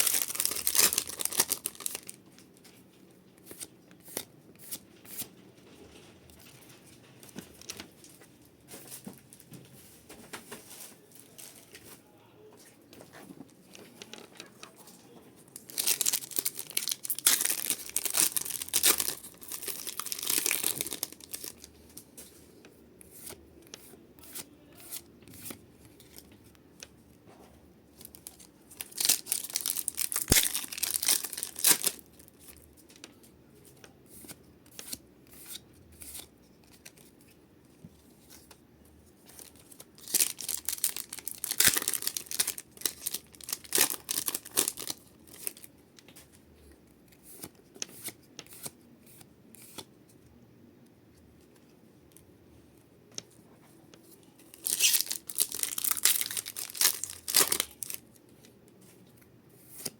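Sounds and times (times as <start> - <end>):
foil packs tearing and crinkling: 0.0 - 2.2, 15.7 - 21.7, 28.0 - 32.1, 39.5 - 45.6, 54.6 - 58.0.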